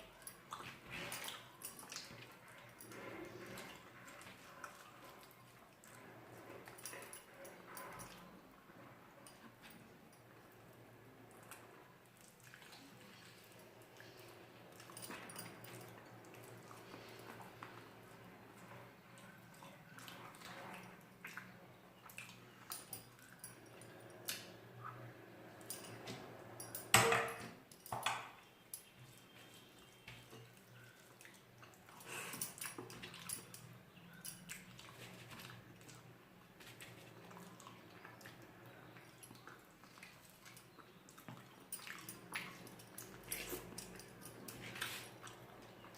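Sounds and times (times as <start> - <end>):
sharp knocks or clinks: 26.8 - 28.4.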